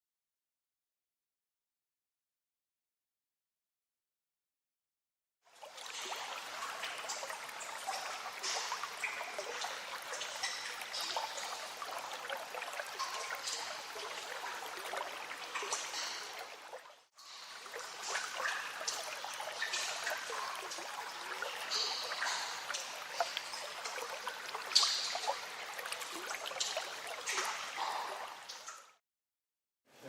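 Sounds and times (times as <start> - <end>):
stream water trickling: 5.5 - 29.0
water drips: 5.5 - 29.0.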